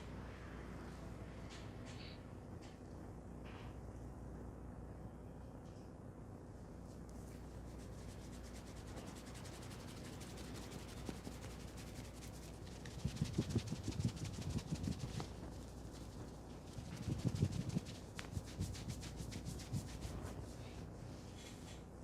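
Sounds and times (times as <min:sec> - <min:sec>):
hands rubbing hair and scalp: 0:07.0 - 0:21.8
heavy muffled strokes: 0:07.2 - 0:22.0.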